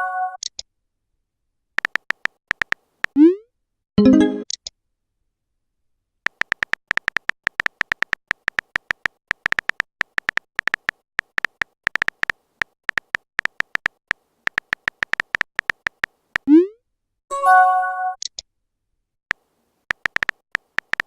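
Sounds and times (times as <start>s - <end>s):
smartphone keyboard clicks: 1.8s - 3.2s, 6.3s - 16.5s, 19.3s - 21.0s.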